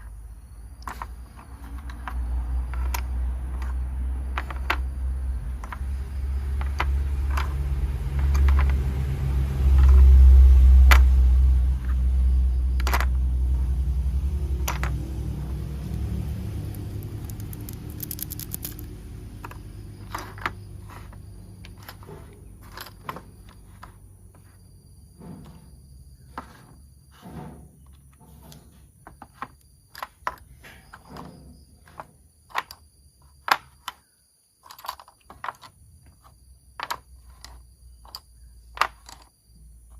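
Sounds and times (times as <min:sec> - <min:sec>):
heavy low rumble: 0:02.6 - 0:22.7
quick rattle: 0:14.6 - 0:20.6
plastic toy parts clicking: 0:15.9 - 0:20.5.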